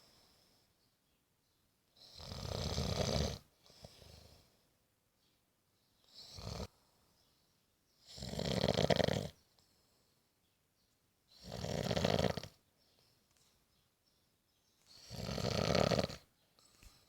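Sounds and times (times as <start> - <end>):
person snoring: 11.4 - 12.6, 15.0 - 16.2.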